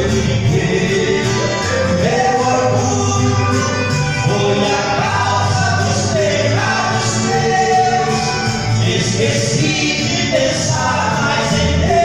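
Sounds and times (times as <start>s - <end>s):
gospel song with voices singing: 0.0s - 12.0s.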